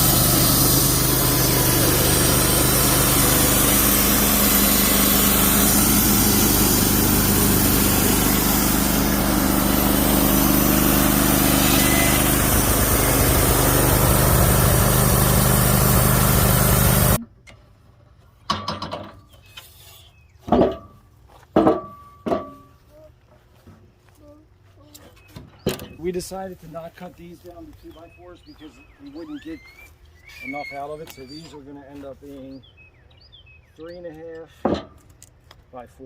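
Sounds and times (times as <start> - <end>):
sawmill running: 0.0 - 17.2.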